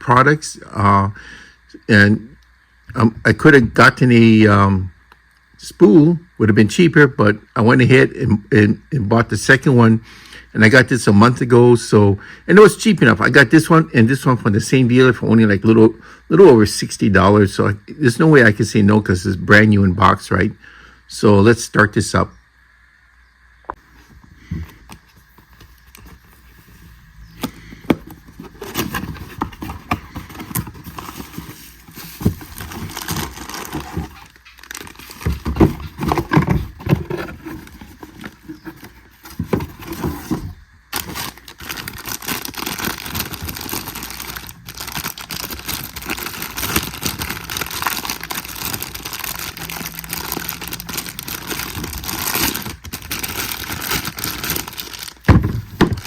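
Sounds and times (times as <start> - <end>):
packaging rustling and crinkling: 23.8 - 56.0.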